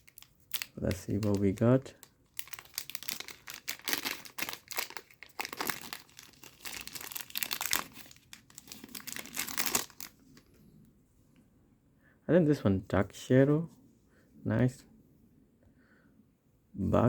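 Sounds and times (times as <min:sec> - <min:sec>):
wrapper crinkling and tearing: 0:00.0 - 0:10.2.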